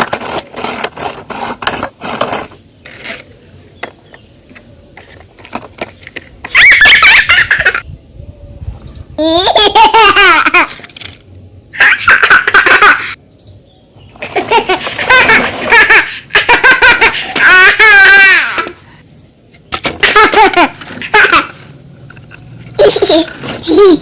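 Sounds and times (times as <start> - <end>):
high-pitched baby-like laughter: 6.5 - 7.9, 9.2 - 10.8, 11.7 - 13.2, 14.2 - 18.8, 19.9 - 21.7, 22.8 - 24.0.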